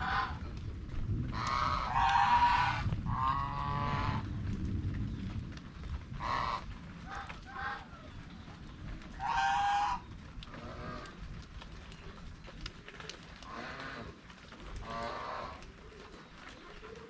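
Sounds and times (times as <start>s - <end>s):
geese honking: 1.4s - 4.2s, 6.2s - 7.9s, 9.2s - 10.0s, 14.8s - 15.7s.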